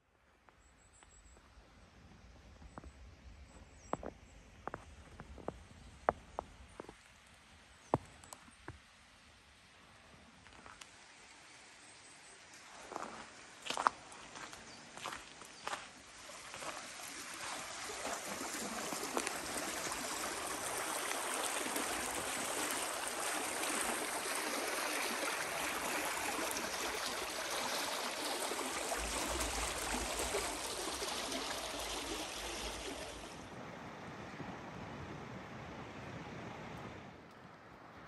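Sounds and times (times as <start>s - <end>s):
running water: 12.4s - 33.5s.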